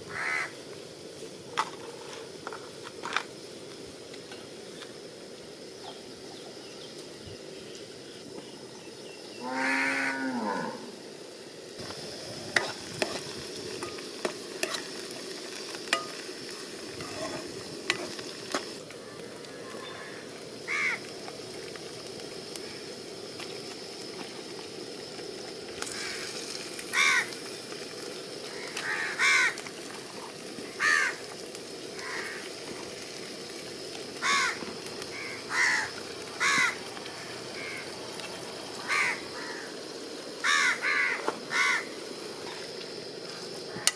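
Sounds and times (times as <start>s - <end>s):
frying hiss: 0.0s - 43.9s
crows cawing: 0.1s - 0.5s, 9.6s - 10.2s, 19.9s - 21.1s, 25.9s - 26.3s, 26.9s - 27.4s, 28.5s - 29.6s, 30.7s - 31.3s, 32.0s - 32.5s, 34.2s - 38.0s, 38.8s - 39.8s, 40.4s - 42.0s
cow mooing: 9.4s - 11.0s.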